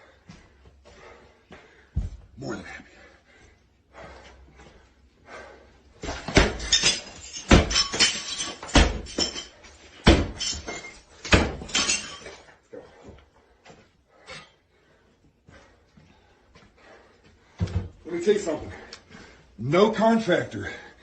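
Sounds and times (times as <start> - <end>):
sledgehammer heavy blows: 6.0 - 9.4, 10.0 - 10.7, 11.3 - 11.8
breaking and clattering debris: 6.1 - 12.4.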